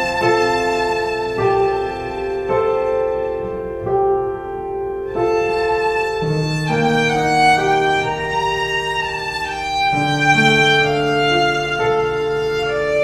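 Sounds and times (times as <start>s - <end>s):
slow string-like instrumental chords: 0.0s - 13.0s.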